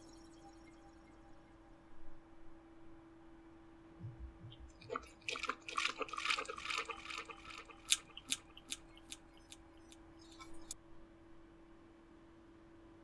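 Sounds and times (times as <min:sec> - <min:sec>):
person slurping water: 0:04.4 - 0:10.8
sharp clicks: 0:04.4 - 0:10.8.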